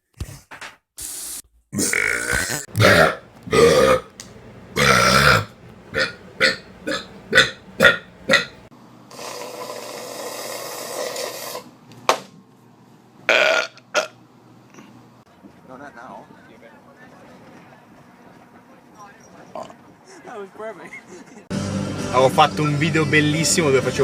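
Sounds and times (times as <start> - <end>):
people burping: 1.8 - 8.7.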